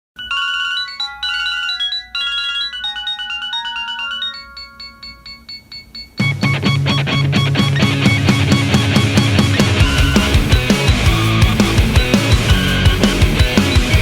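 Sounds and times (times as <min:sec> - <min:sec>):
electronic ringtone melody: 0:00.2 - 0:14.0
heavy metal band playing: 0:06.2 - 0:14.0.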